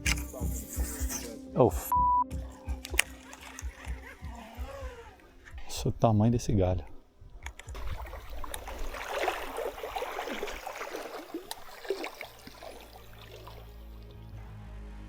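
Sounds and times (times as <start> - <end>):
background music: 0.0 - 5.7, 12.2 - 15.0
water splashing and gurgling: 7.4 - 14.2.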